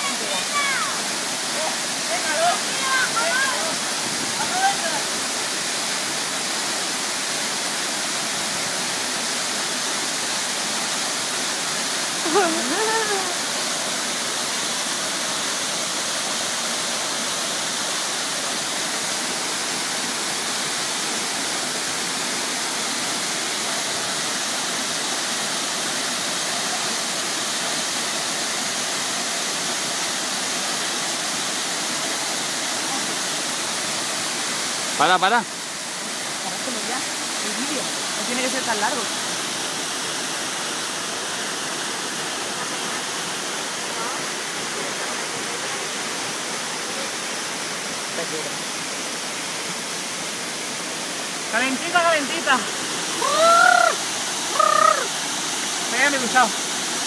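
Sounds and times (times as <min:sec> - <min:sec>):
waterfall rushing: 0:00.0 - 0:57.0
brief cry: 0:53.1 - 0:55.2.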